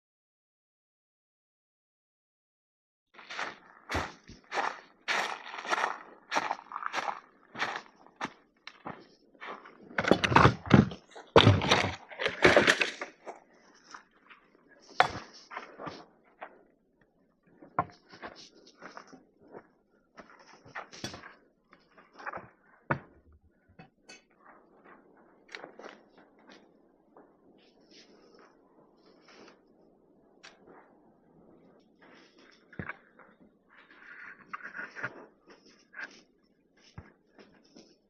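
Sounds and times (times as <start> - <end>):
objects knocking and clattering: 10.0 - 13.2.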